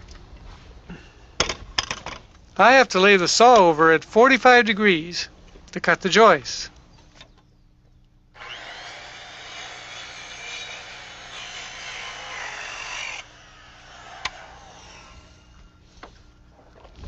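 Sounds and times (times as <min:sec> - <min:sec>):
circular saw cutting wood: 0:08.4 - 0:16.5
saw click: 0:14.1 - 0:15.3.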